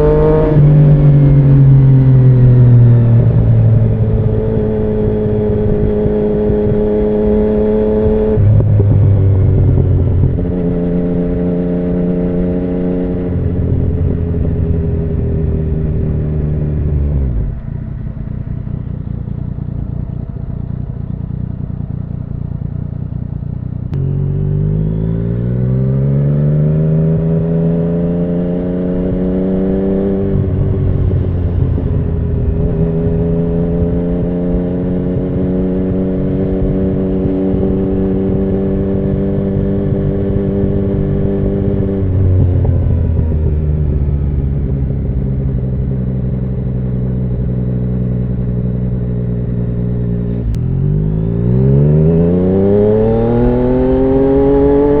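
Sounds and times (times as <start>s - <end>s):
motorcycle engine revving: 0.0s - 55.0s.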